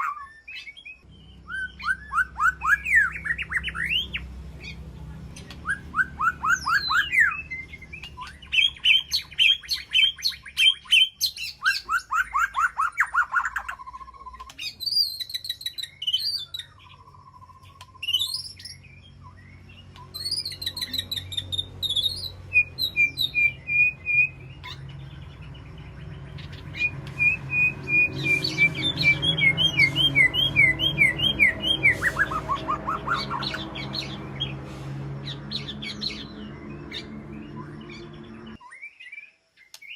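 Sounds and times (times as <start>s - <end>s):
bird singing trills: 0.0s - 39.9s
steady low hum: 20.8s - 38.6s.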